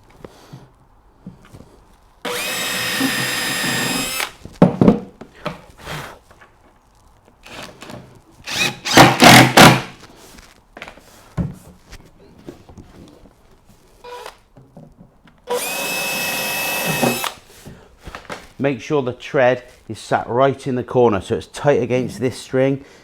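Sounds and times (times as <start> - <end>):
cordless drill drilling wood: 2.3 - 4.4, 7.5 - 7.9, 8.5 - 9.9, 15.5 - 17.4.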